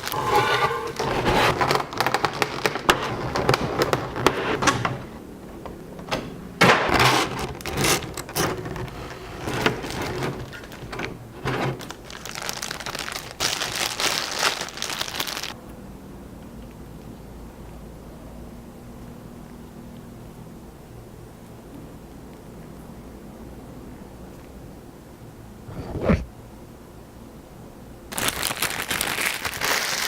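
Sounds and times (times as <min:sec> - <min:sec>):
dense plastic rustle: 0:00.0 - 0:05.2, 0:06.7 - 0:15.6
plastic packaging crinkling: 0:00.0 - 0:05.2, 0:06.8 - 0:15.6, 0:28.1 - 0:30.0.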